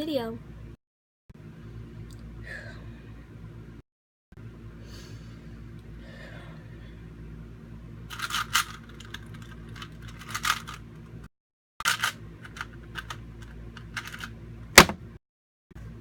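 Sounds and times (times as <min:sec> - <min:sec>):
puzzle cube clicking and rattling: 0:08.1 - 0:10.8, 0:11.9 - 0:14.3.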